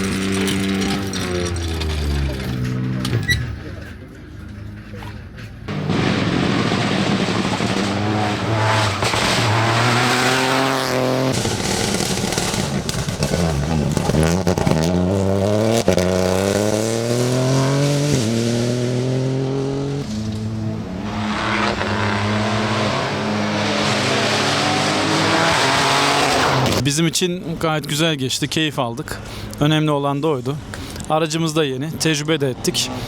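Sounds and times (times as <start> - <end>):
rally car engine at full throttle: 0.0 - 26.8
tyre squeal: 3.1 - 3.6.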